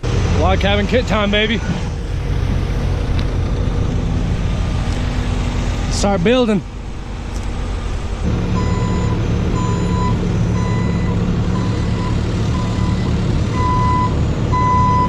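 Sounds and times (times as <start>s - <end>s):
diesel engine hum: 0.0s - 15.0s
backup alarm beeping: 8.6s - 15.0s.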